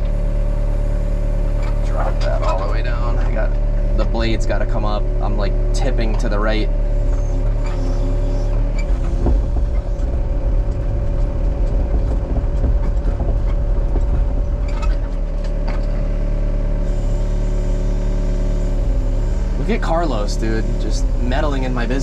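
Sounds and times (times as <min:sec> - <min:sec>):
excavator engine whining: 0:00.0 - 0:22.0
metal knocks and clanks: 0:07.0 - 0:16.2.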